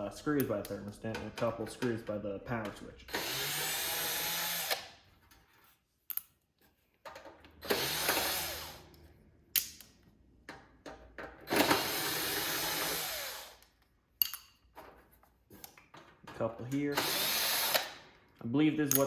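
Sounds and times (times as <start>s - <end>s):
power drill running: 3.1s - 4.9s, 7.6s - 8.9s, 11.5s - 13.6s, 16.9s - 18.0s
clicks and knocks of screws: 13.6s - 16.8s.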